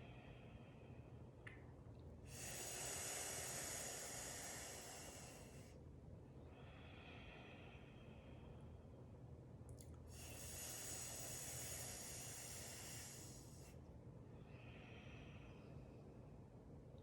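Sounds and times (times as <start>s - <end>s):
hissing inhale through tongue: 2.3s - 5.7s, 10.2s - 13.8s
soft exhale through nose: 2.3s - 5.8s, 10.2s - 13.8s.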